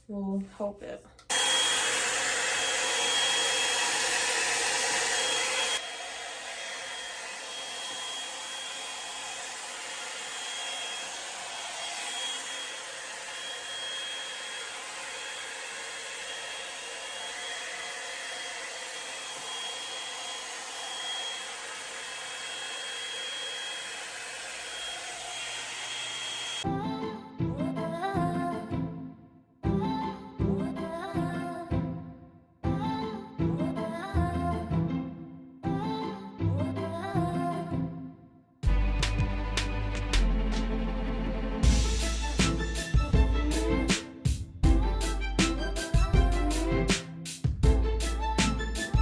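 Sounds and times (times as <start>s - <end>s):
blow-dryer brush running: 1.3s - 26.6s, 41.6s - 46.9s.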